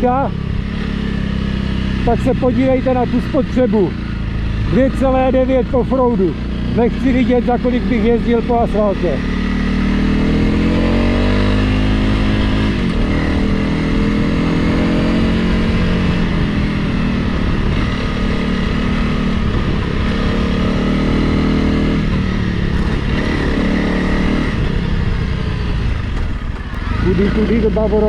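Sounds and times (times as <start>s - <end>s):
motorcycle engine revving: 0.0s - 28.0s
wind rumbling on microphone: 10.2s - 20.6s.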